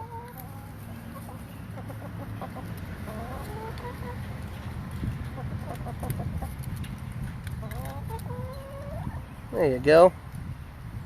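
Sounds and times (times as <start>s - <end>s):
hens clucking: 0.0s - 4.6s, 5.2s - 6.7s, 7.6s - 9.3s.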